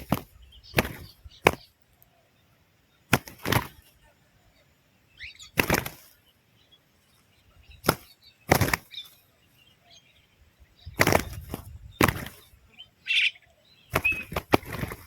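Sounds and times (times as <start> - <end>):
bird wings flapping: 0.0 - 1.7, 3.1 - 4.0, 5.5 - 6.2, 7.8 - 9.2, 10.9 - 12.6, 13.9 - 15.0
faint bird chirp: 0.0 - 15.0.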